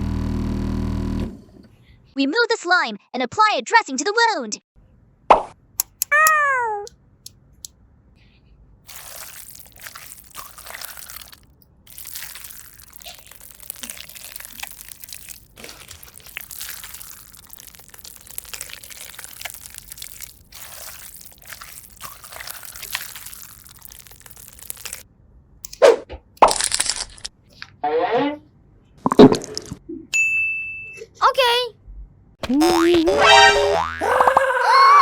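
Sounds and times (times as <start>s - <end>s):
slime squelching and crackling: 8.9s - 25.0s.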